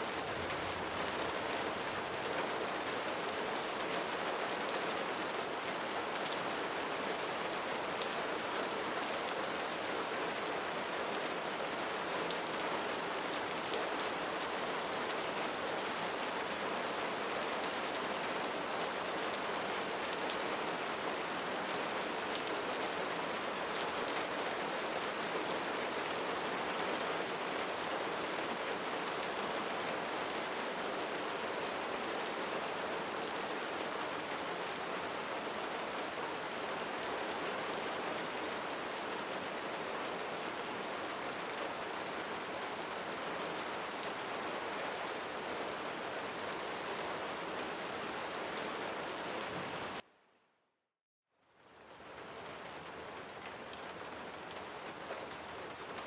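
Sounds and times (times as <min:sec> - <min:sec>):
rain falling on leaves: 0:00.0 - 0:50.1, 0:51.3 - 0:56.0.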